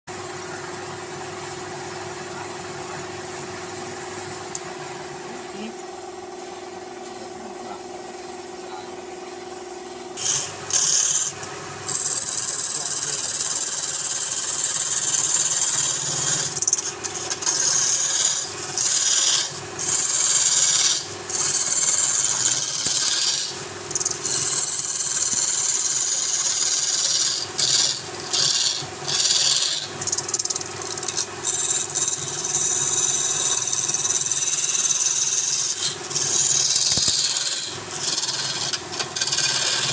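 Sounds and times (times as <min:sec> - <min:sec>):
wood lathe motor humming: 0:09.7 - 0:39.9
turning tool scraping wood: 0:10.2 - 0:39.9.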